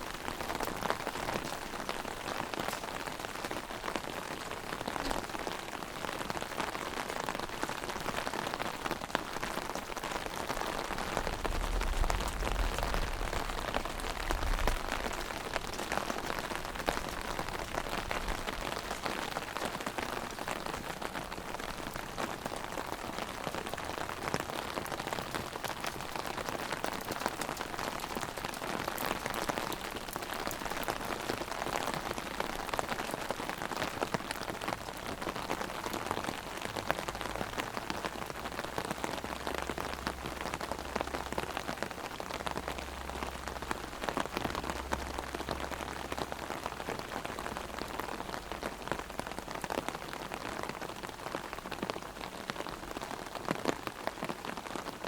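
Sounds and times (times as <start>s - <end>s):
heavy rain on an umbrella: 0.0s - 55.0s
faint low rumble: 11.2s - 15.2s.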